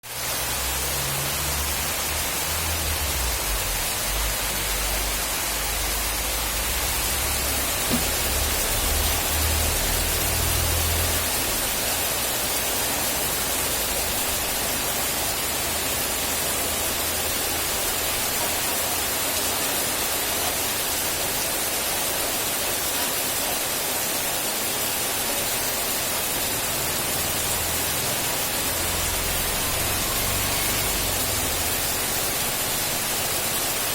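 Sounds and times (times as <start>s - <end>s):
heavy rain: 0.0s - 33.9s.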